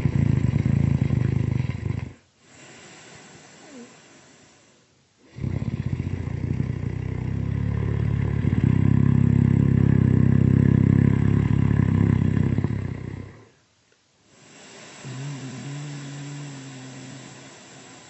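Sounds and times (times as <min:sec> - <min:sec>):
loud rattling snore: 0:00.0 - 0:02.2, 0:05.3 - 0:13.5, 0:14.5 - 0:18.0.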